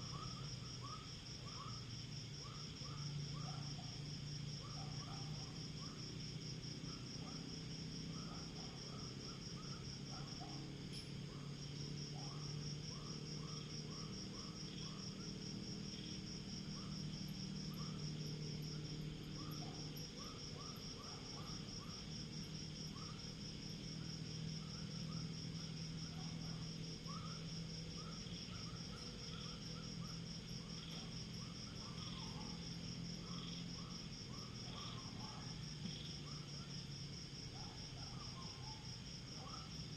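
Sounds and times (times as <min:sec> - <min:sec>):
high cricket trill: 0:00.0 - 0:39.9.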